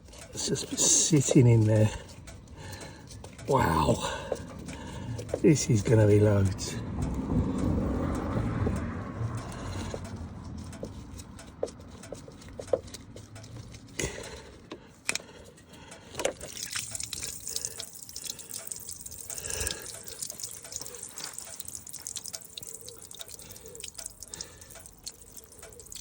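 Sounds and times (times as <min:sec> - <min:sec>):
water draining and dripping: 0:00.1 - 0:06.7, 0:16.0 - 0:26.0.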